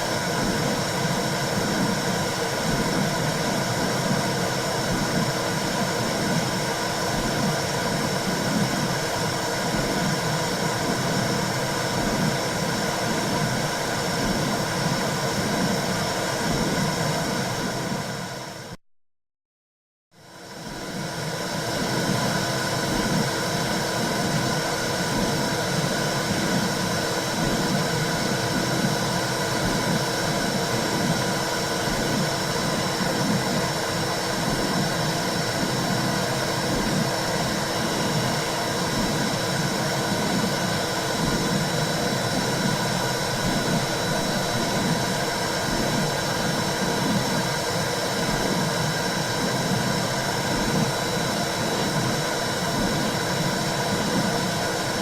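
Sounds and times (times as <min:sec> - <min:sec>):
low heartbeat-like pulsing: 0:22.8 - 0:54.4.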